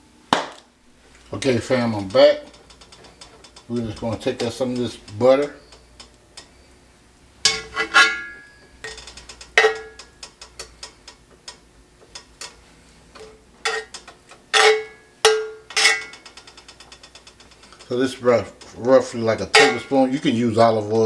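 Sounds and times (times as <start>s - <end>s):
metal utensil clanking on cookware: 7.4s - 11.0s, 13.2s - 20.3s.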